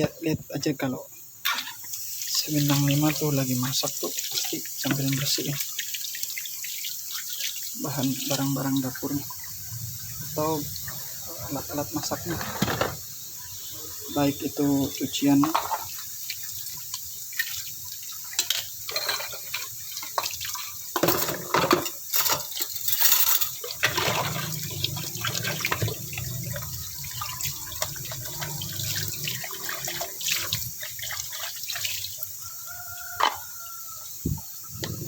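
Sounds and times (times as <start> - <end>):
water running and splashing: 1.4 - 35.0
dishes and utensils clinking: 15.4 - 15.9, 18.3 - 30.6.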